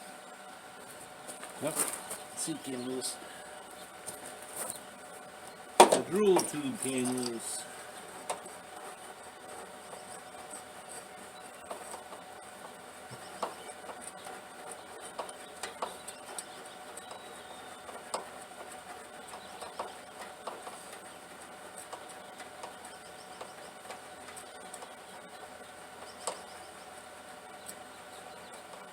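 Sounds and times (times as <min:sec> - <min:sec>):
faint steady hum: 0:00.0 - 0:28.9
hand tools tapping on metal: 0:05.8 - 0:07.6, 0:13.1 - 0:21.1.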